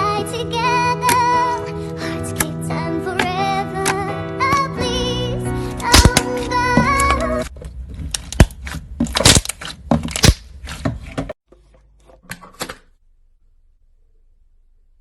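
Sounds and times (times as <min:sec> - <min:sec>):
slime popping and crackling: 0:08.2 - 0:10.5.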